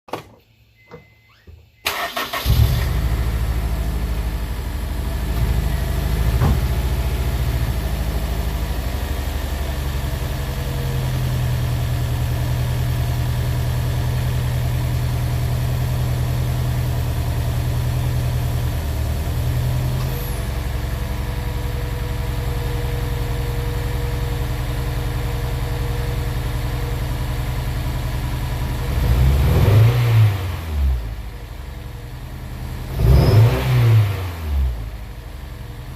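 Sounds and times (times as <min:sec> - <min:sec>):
car engine idling with misfire: 0:01.9 - 0:35.9
car engine revving: 0:28.8 - 0:31.0, 0:32.8 - 0:34.9.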